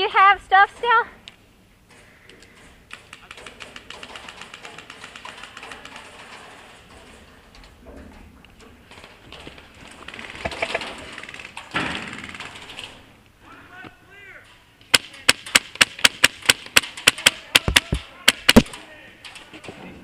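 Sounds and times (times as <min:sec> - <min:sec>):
airsoft gun shots: 0:14.9 - 0:18.8.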